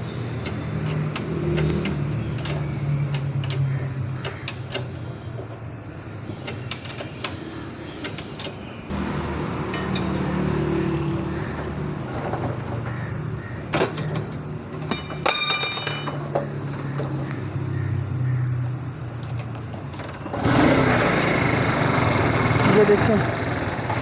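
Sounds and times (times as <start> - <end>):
spanner metallic clicks: 6.4 - 8.6.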